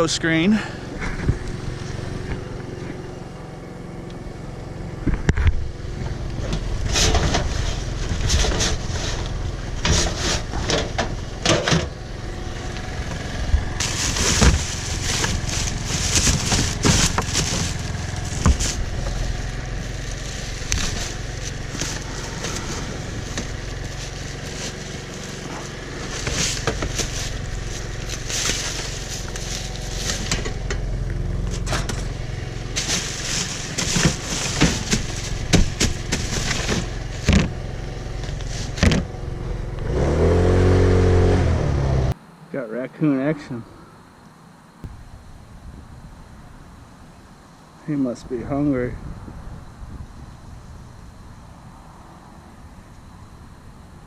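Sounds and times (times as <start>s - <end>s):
low engine rumble: 0.0s - 54.0s
scrap metal clanking and scraping: 6.0s - 12.0s, 13.0s - 39.1s.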